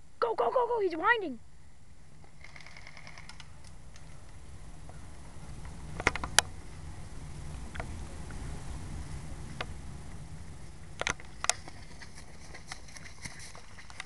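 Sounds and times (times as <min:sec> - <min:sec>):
sharp clicks: 0:02.3 - 0:04.1.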